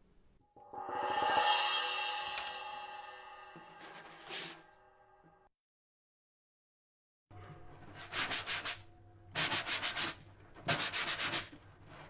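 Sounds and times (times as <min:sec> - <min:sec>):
rapid scraping strokes: 0:02.1 - 0:04.7.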